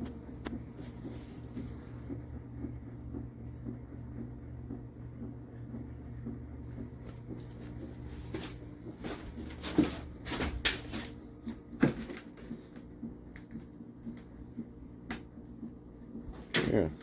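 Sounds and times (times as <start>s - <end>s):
faint steady hum: 0.0s - 17.0s
clicks and knocks of hard objects: 8.3s - 14.3s.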